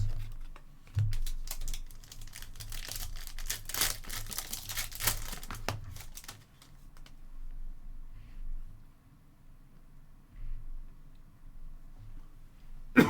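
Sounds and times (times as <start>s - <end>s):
wrapper tearing and crinkling: 0.0s - 7.1s.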